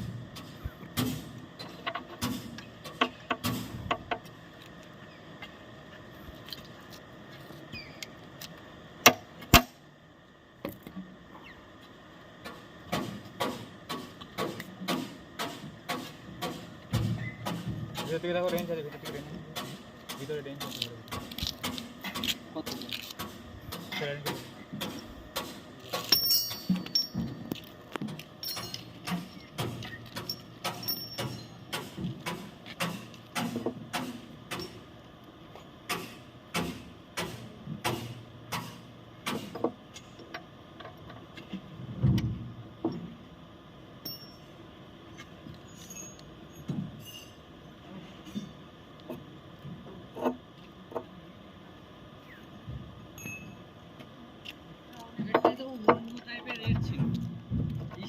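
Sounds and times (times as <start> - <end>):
metal tools clinking on metal: 25.9 - 27.4, 28.4 - 31.7, 44.0 - 44.6, 45.7 - 47.4, 53.2 - 53.6
steel tools knocking on metal: 28.4 - 31.9.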